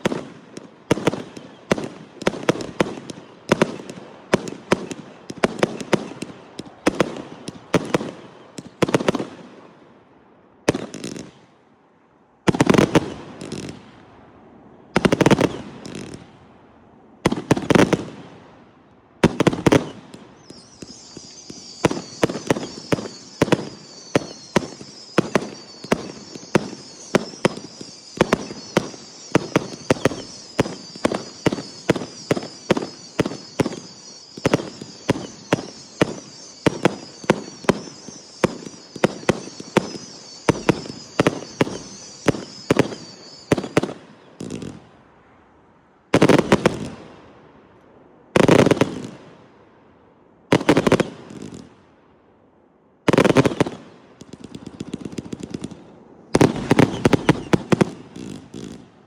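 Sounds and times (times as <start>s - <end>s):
fireworks bangs: 0.0s - 9.5s, 12.5s - 14.1s, 14.9s - 16.4s, 19.2s - 45.0s, 46.1s - 47.2s, 48.4s - 49.4s, 50.5s - 51.8s, 53.1s - 59.0s
loud firework bursts: 0.0s - 9.6s, 12.5s - 14.1s, 14.9s - 45.1s, 46.1s - 47.3s, 48.4s - 49.5s, 50.5s - 51.8s, 53.1s - 59.0s
fireworks high hissing: 19.5s - 44.9s, 53.1s - 58.9s.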